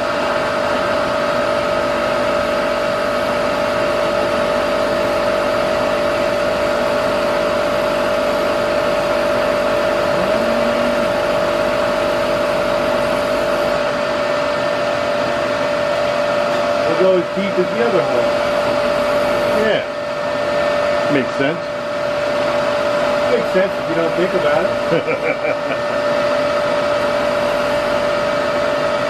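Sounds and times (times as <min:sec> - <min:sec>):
machine tool motor whining: 0:10.0 - 0:11.5.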